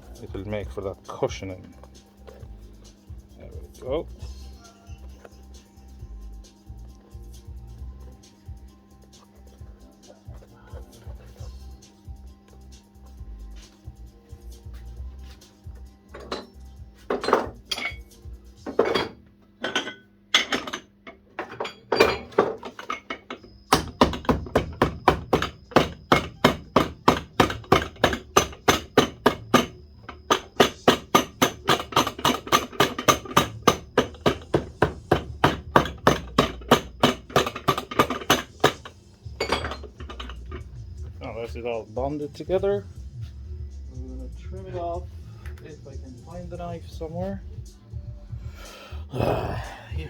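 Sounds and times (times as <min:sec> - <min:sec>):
hammer striking leather sole: 0:23.7 - 0:38.9.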